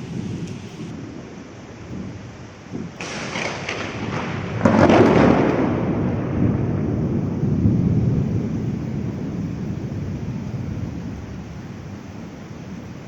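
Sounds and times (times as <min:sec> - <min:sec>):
heavy rain hiss: 0:00.0 - 0:13.0
thunder clap and rumbling: 0:00.0 - 0:13.0.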